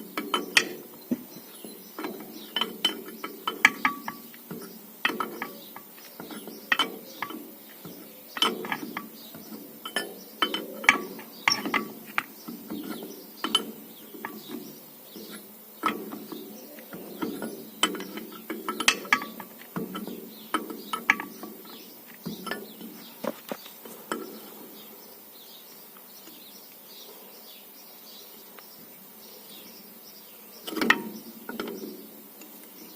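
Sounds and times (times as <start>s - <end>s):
hand tools clicking and clinking: 0.1s - 24.4s.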